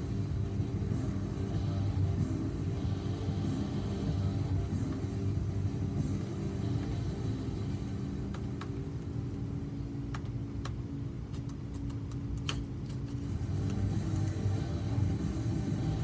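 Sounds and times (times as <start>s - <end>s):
steady low hum: 0.0s - 16.0s
keyboard and mouse clicks: 10.1s - 14.3s.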